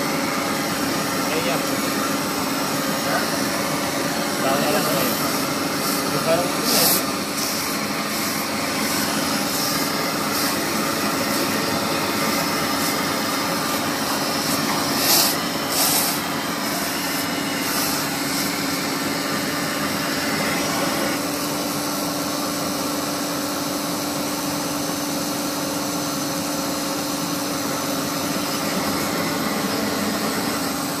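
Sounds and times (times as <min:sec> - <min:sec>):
industrial machine humming: 0:00.0 - 0:31.0
short hissing bursts: 0:04.5 - 0:19.1.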